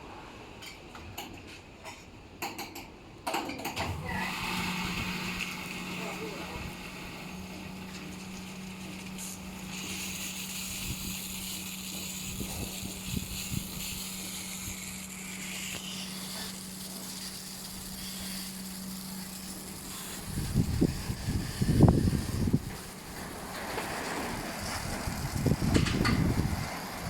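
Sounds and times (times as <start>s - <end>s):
washing machine humming and hissing: 3.3s - 27.0s
wind buffeting microphone: 20.2s - 23.2s, 24.2s - 27.0s.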